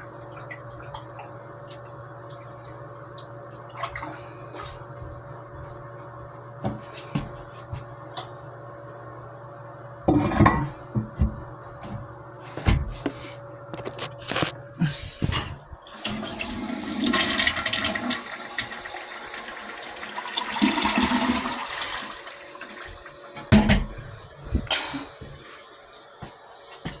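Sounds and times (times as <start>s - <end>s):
toilet flushing: 15.3s - 27.0s.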